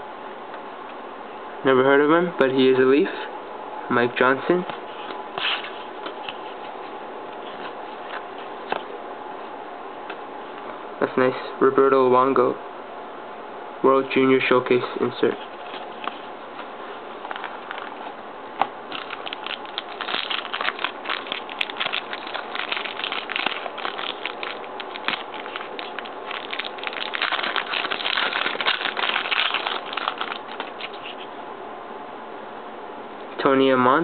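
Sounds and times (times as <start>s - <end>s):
wrapper crinkling: 17.2s - 18.2s, 18.9s - 31.3s.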